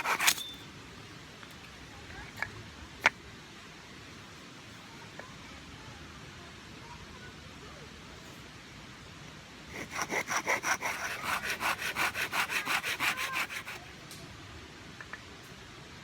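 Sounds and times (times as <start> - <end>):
hand saw cutting wood: 0.0 - 0.4, 9.7 - 13.8.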